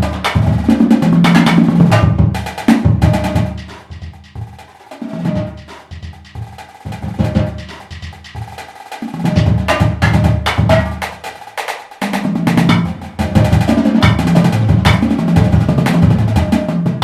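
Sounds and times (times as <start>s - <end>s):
bass drum notes: 0.0s - 4.5s, 9.2s - 11.1s, 12.3s - 17.0s
rapid snare drum strokes: 0.0s - 17.0s.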